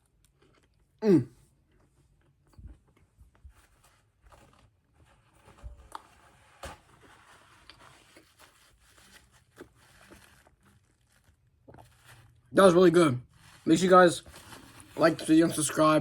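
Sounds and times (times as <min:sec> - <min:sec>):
chewing crunchy pastry: 0:00.0 - 0:12.5.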